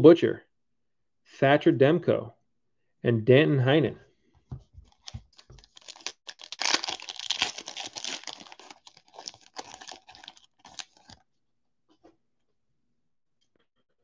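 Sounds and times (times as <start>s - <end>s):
foil wrapper tearing and crinkling: 4.9s - 11.2s.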